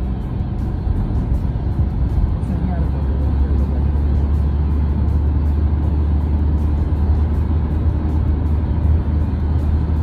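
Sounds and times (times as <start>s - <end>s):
music with a beat: 0.0s - 5.6s
car interior rumble: 0.0s - 10.0s.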